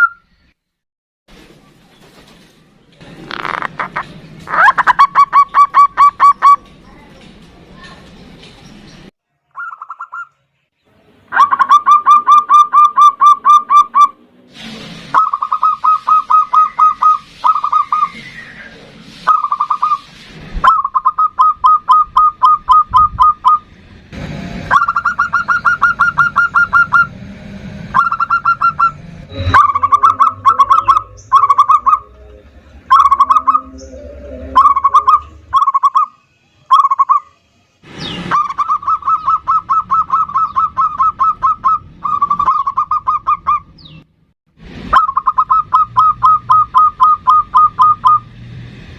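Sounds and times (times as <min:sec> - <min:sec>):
dove cooing: 0:29.6 - 0:36.1, 0:38.4 - 0:43.6.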